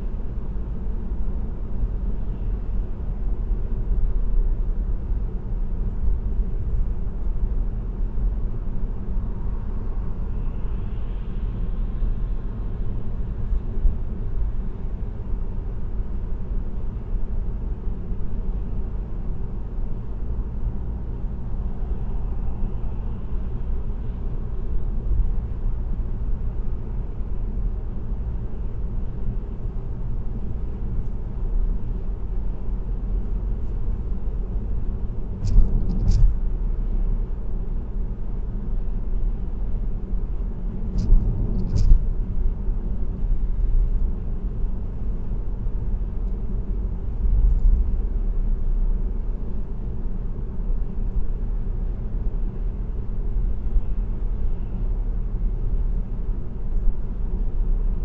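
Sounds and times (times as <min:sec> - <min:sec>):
car road rumble: 0:00.0 - 0:58.0.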